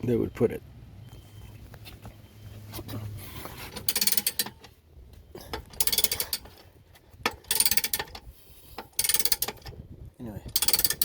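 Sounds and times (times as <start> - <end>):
car jack ratcheting clicks: 3.8 - 4.7, 5.6 - 6.7, 7.3 - 9.8, 10.5 - 11.0.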